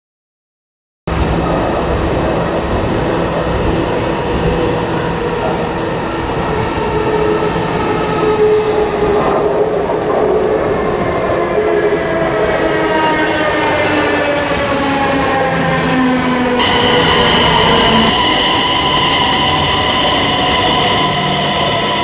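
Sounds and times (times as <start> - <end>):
electric train rumbling: 1.1 - 22.0
train wheels squealing: 3.7 - 9.1, 16.6 - 22.0
train motor whine: 16.6 - 22.0.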